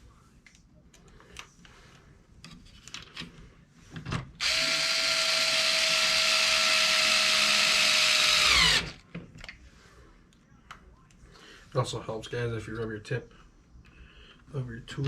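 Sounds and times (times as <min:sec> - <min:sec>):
power driver whining: 0:04.4 - 0:09.0.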